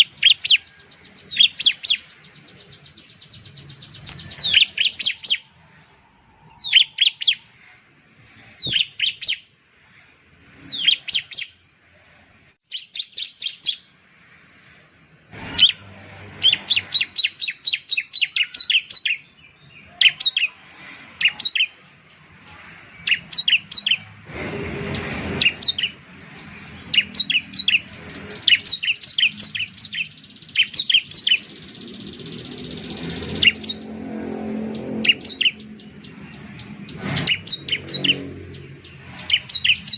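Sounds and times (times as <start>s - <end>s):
bird chirping: 0.0s - 39.9s
rush of noise: 3.6s - 11.0s, 19.8s - 39.9s.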